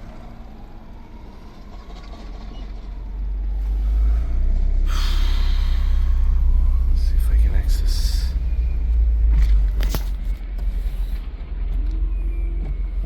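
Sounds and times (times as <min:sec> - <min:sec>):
car road rumble: 0:00.0 - 0:13.0
hissing noise: 0:04.9 - 0:08.0.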